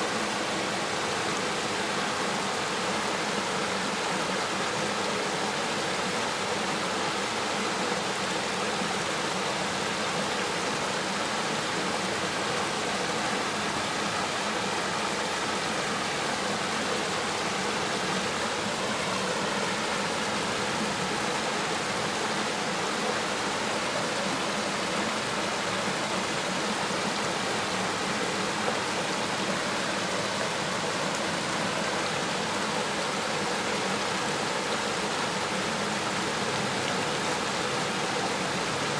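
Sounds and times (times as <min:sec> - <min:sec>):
river water over rocks: 0:00.0 - 0:38.9.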